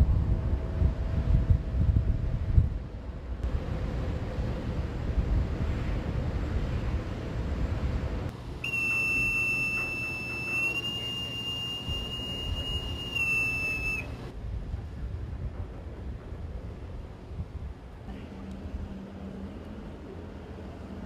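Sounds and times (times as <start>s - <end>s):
wind rumble on microphone: 0.0s - 8.3s, 11.8s - 21.0s
high-pitched buzzer tone: 8.6s - 14.2s.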